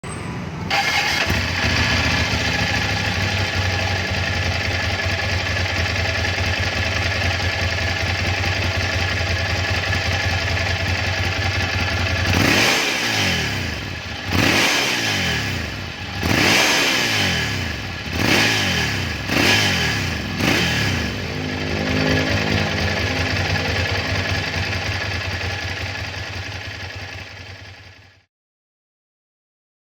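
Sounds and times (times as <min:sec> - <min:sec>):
motorcycle engine idling: 0:00.7 - 0:28.3
motorcycle throttle blips: 0:17.9 - 0:27.2.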